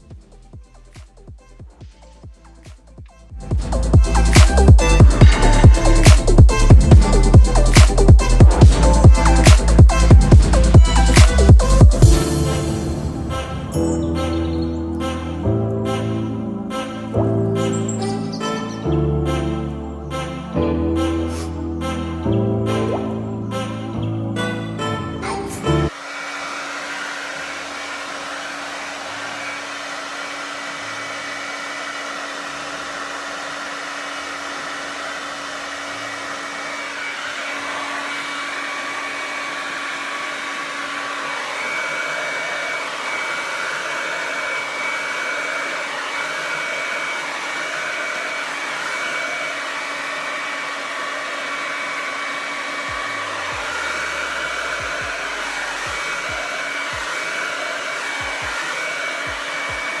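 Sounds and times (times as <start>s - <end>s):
hair dryer blowing air: 2.0s - 19.4s, 20.1s - 23.8s, 24.4s - 60.0s.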